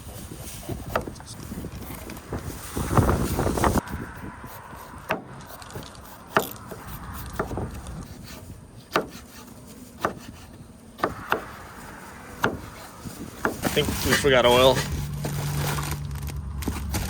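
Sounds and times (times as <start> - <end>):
wind rush: 0.0 - 8.8, 11.0 - 15.8
low outdoor background: 0.0 - 17.0
sharp knocks: 12.4 - 12.7.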